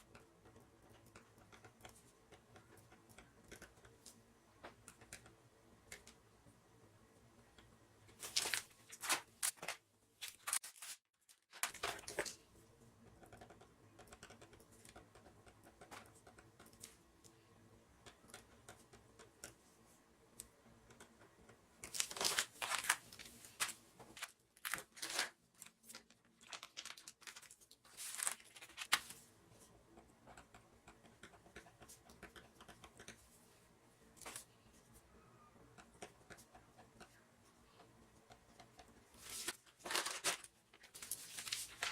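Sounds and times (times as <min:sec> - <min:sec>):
plastic packaging crinkling: 0:21.9 - 0:29.1.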